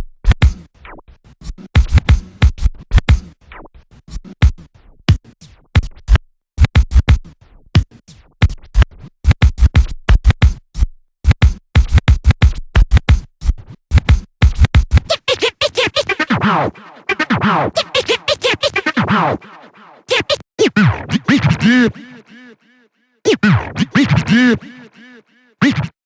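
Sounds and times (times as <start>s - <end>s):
record scratching on turntable: 15.1s - 22.3s, 23.3s - 26.0s.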